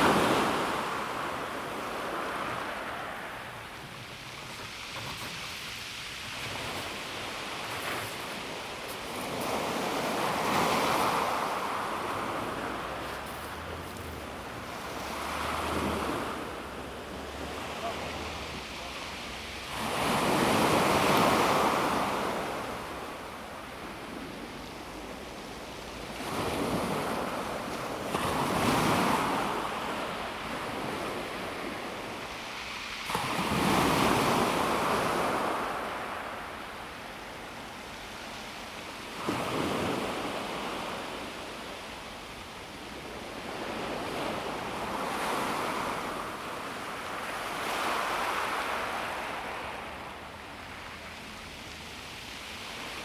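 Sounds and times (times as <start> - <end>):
waves breaking on pebble beach: 0.0 - 37.0.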